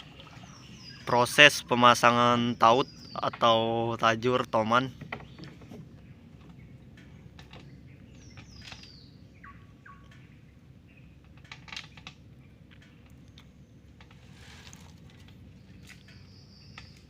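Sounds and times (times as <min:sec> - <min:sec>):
faint bird calls: 0:04.4 - 0:17.0
light clicks and knocks: 0:04.8 - 0:08.9.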